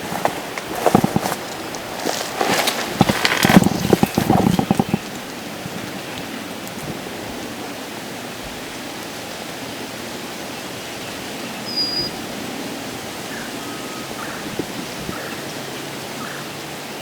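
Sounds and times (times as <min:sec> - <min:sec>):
wind buffeting microphone: 0:00.0 - 0:15.8
small bird chirp: 0:11.6 - 0:12.2.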